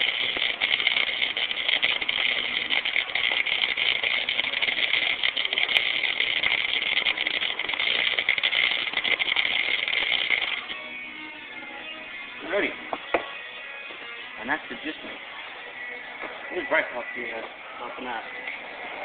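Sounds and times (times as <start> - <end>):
welding arc crackling: 0.0 - 10.8.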